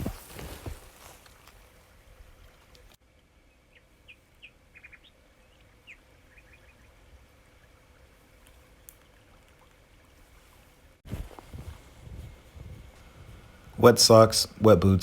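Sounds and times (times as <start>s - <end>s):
faint outdoor ambience: 0.0s - 15.0s
small bird chirping: 3.4s - 7.0s
dull thumps: 11.1s - 13.4s.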